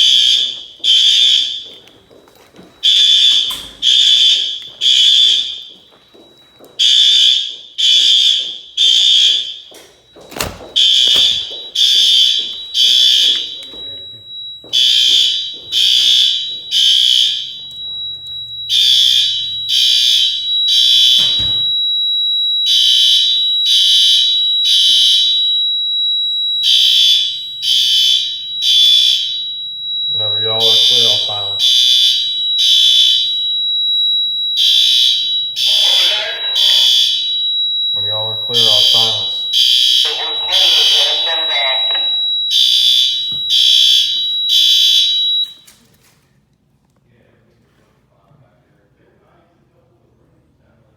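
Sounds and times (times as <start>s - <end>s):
fire alarm bell ringing: 0.0s - 45.9s
steady high-pitched tone: 30.0s - 33.8s, 35.1s - 44.2s.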